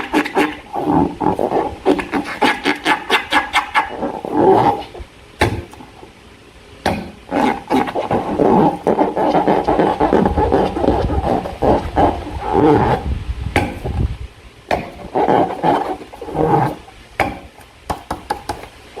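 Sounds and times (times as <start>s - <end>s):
slime squelching: 7.0s - 13.0s.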